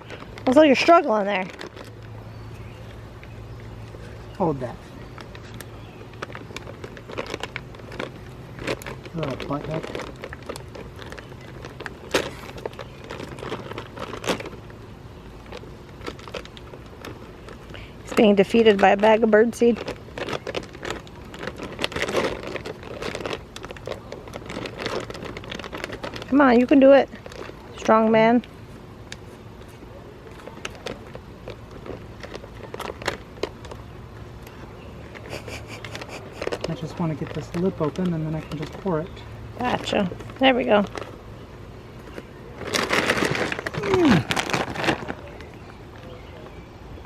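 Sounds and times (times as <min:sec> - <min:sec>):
bag crinkling and rustling: 0:00.0 - 0:47.0
low steady hum: 0:00.0 - 0:47.0.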